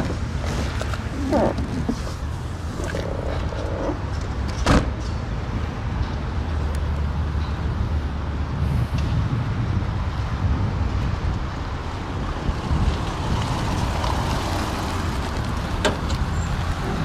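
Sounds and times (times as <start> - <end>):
car door shutting: 15.8 - 16.3.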